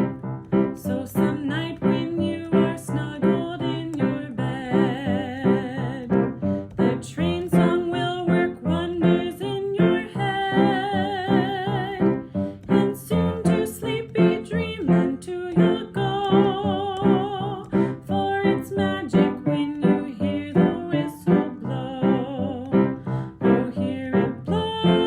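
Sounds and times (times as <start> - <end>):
piano accompaniment: 0.0 - 25.0
woman singing: 0.7 - 25.0.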